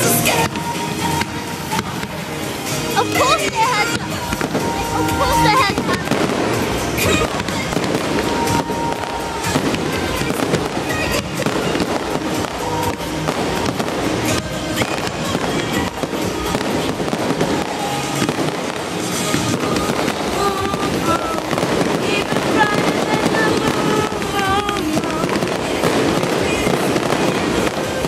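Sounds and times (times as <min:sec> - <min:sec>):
fireworks bangs and crackles: 0:00.0 - 0:28.0
music over loudspeakers: 0:00.0 - 0:28.0.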